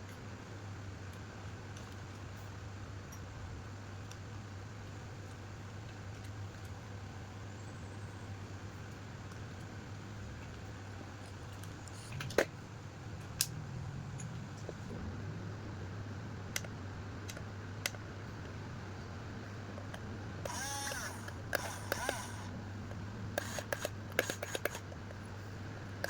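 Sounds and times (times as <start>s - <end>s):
sharp plastic clicks: 19.8s - 25.2s
toy bulldozer motor hum: 20.4s - 22.6s, 23.4s - 25.0s.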